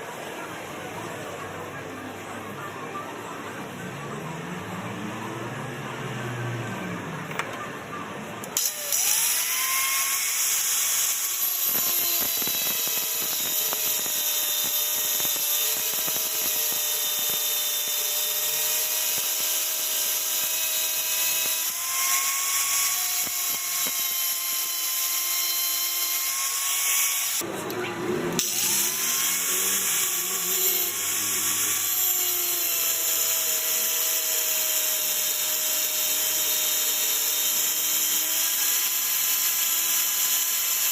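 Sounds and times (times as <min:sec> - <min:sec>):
electric power tool whining: 0:08.4 - 0:27.5, 0:28.3 - 0:40.9.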